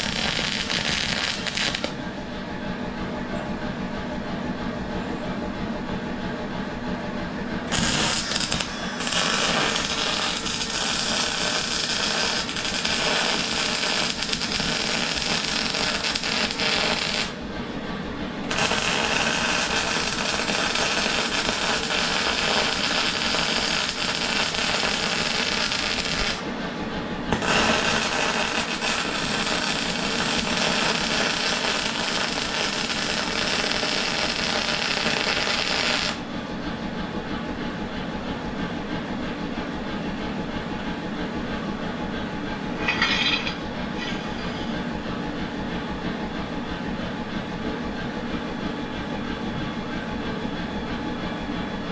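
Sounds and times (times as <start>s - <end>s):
welder arc crackling and hissing: 0.0s - 2.0s, 7.7s - 17.4s, 18.5s - 26.5s, 27.3s - 36.2s.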